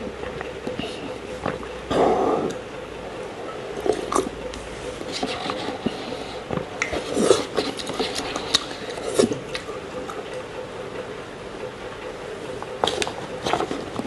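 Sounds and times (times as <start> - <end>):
eating mouth sounds: 5.0 - 10.4.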